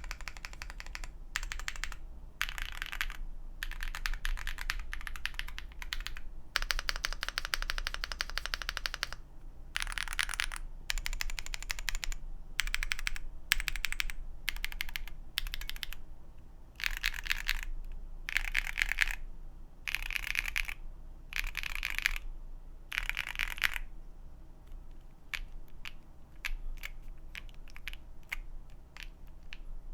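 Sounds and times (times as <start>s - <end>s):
mechanical keyboard typing: 0.0s - 9.2s, 9.8s - 16.0s, 16.8s - 17.7s, 18.3s - 19.2s, 19.9s - 22.3s, 22.9s - 23.9s, 25.3s - 29.7s.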